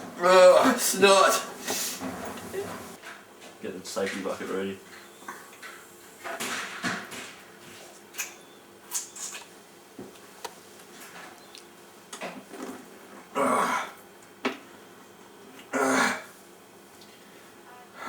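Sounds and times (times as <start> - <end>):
small mouth clicks: 8.2 - 9.5
man belching: 13.3 - 14.0, 15.7 - 16.3.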